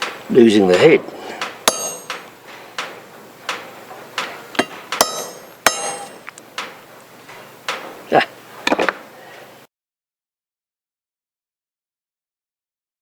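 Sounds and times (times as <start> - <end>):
hammer blows on metal: 0.0 - 2.9, 3.5 - 6.8.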